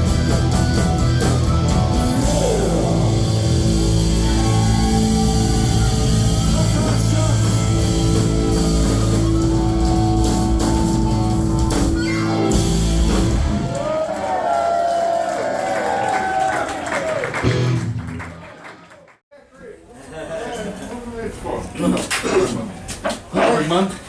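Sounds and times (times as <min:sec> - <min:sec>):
live rock band playing: 0:00.0 - 0:13.9, 0:17.4 - 0:18.4.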